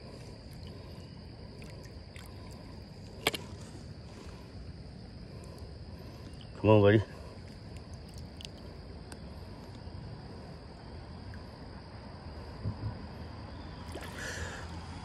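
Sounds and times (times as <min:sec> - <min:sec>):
high insect drone: 0:00.0 - 0:15.0.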